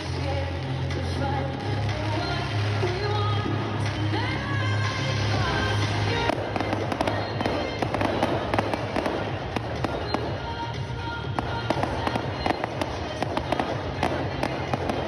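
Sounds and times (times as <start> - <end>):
music playing: 0.0 - 15.0
fireworks cracks and bangs: 5.5 - 15.0.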